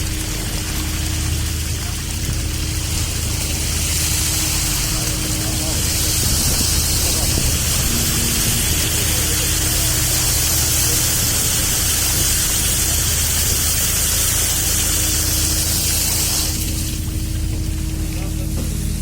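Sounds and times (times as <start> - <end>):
loud even hiss: 0.0 - 18.0
boat engine running: 0.0 - 19.0.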